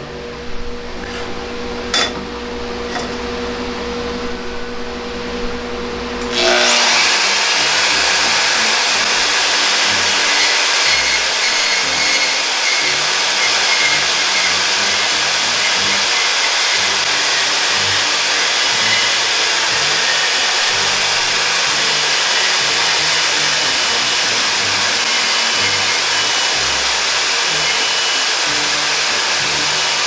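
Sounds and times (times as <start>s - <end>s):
band saw running: 6.2s - 30.0s
saw blade cutting metal pipe: 6.3s - 30.0s.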